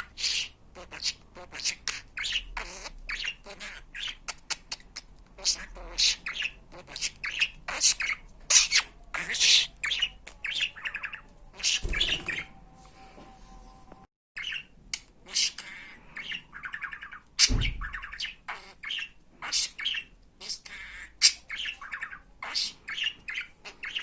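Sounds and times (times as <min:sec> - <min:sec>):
budgerigar chirping: 0:00.0 - 0:12.6, 0:14.4 - 0:24.0
thump: 0:17.5 - 0:17.9.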